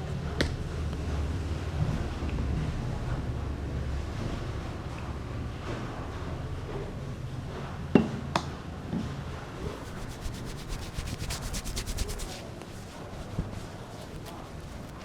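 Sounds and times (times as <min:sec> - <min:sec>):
hands rubbing hair and scalp: 0:09.6 - 0:15.0.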